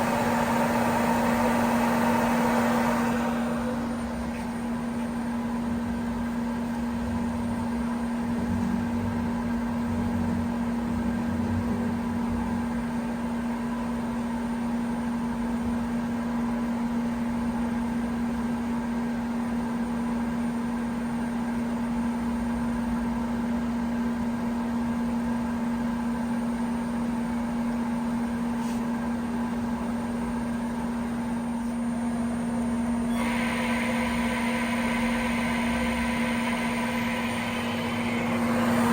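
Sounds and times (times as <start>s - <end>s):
lathe machine hum: 0.0s - 6.5s, 32.0s - 38.9s
bright hissy machine noise: 32.8s - 38.9s.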